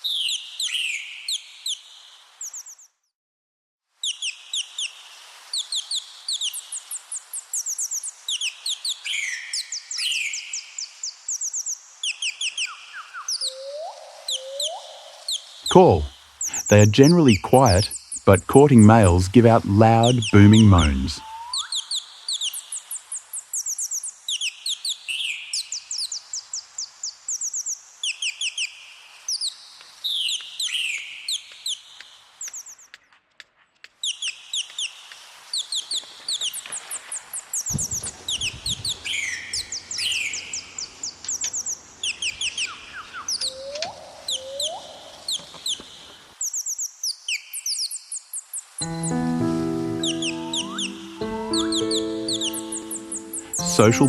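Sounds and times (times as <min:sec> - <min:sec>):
bird chirping: 0:11.4 - 0:22.4, 0:48.8 - 0:54.0.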